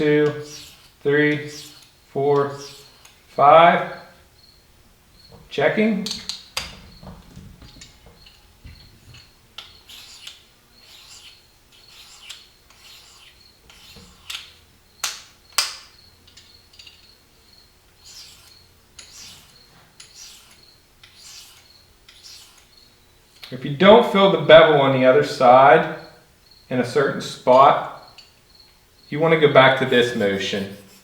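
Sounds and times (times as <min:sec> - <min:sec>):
light scrapes on sharpening stone: 0:00.2 - 0:03.2, 0:08.2 - 0:14.5, 0:18.0 - 0:22.7
small metallic clicks: 0:06.0 - 0:06.8, 0:13.7 - 0:17.2
faint high chirping: 0:27.6 - 0:30.7.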